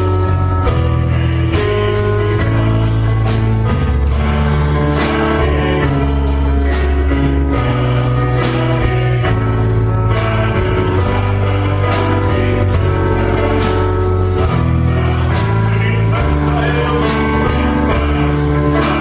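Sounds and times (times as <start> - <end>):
worship band music: 0.0 - 19.0.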